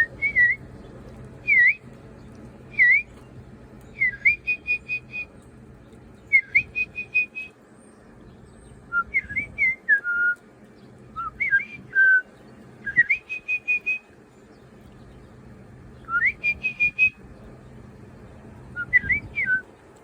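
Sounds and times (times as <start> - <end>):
woman whistling bird call: 4.0 - 5.3, 6.3 - 7.5, 8.9 - 10.4, 12.9 - 14.0, 16.1 - 17.2, 18.8 - 19.6.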